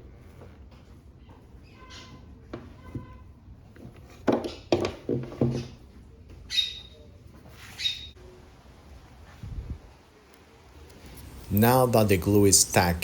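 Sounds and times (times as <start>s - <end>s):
objects knocking on work surface: 4.2s - 5.8s.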